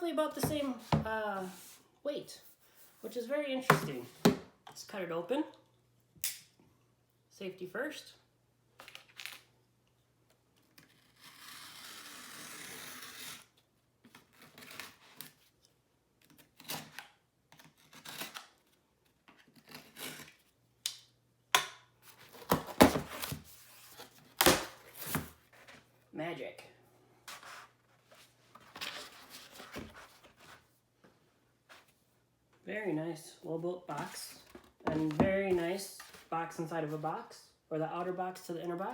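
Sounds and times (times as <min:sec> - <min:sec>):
blade scraping through tape: 0:10.8 - 0:13.6, 0:19.6 - 0:20.5.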